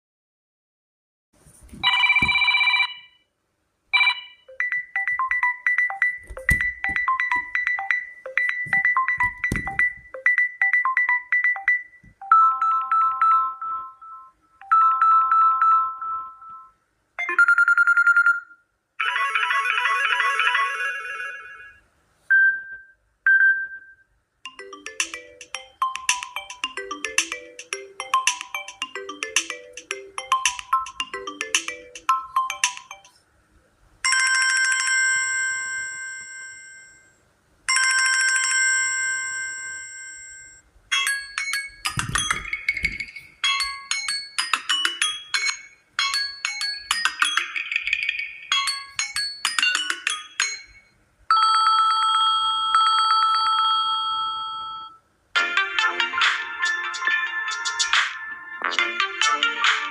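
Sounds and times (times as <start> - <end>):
electronic ringtone melodies: 4.0 - 22.6, 24.5 - 33.2, 40.9 - 59.9.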